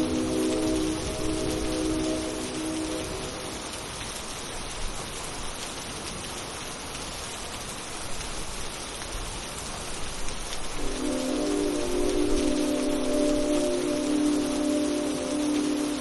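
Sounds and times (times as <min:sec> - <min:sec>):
steady rain falling: 0:00.0 - 0:16.0.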